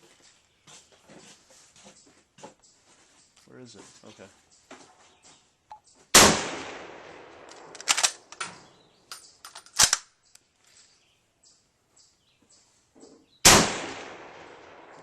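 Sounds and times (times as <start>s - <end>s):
rifle shot echoing: 6.2s - 8.6s, 13.4s - 15.0s
rifle bolt metallic clacks: 7.4s - 10.4s.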